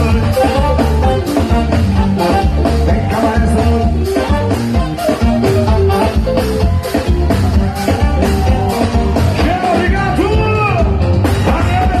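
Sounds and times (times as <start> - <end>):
dance song with singing: 2.6 - 4.8.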